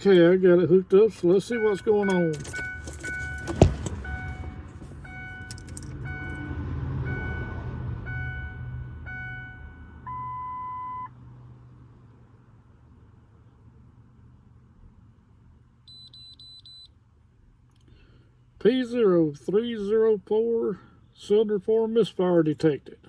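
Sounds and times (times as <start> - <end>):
scan tool beeping: 1.4 - 6.4.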